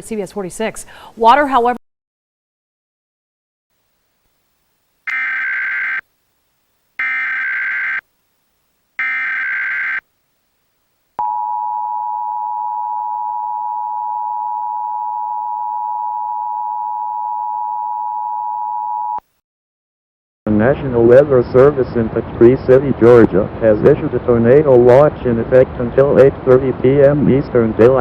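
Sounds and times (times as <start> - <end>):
data burst tones: 5.1 - 6.0, 7.0 - 8.0, 9.0 - 10.0.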